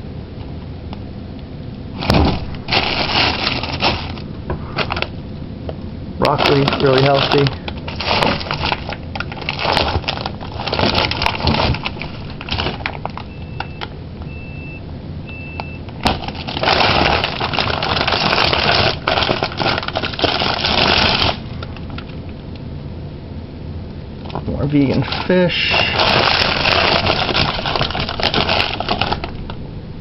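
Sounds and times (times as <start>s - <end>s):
plastic bags crinkling: 1.9s - 5.2s, 6.2s - 13.8s, 16.0s - 22.2s, 24.8s - 29.6s
short electronic beeps: 13.3s - 15.8s.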